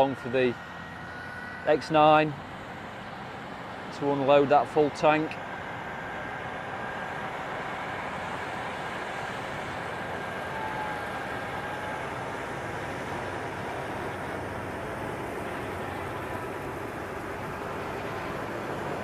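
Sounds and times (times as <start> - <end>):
combine harvester drone: 0.0 - 19.0.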